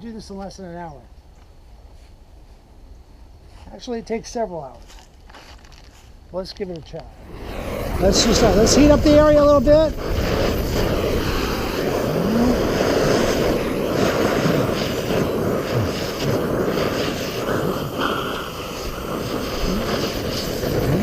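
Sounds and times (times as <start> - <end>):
heat gun roaring: 7.2 - 21.0.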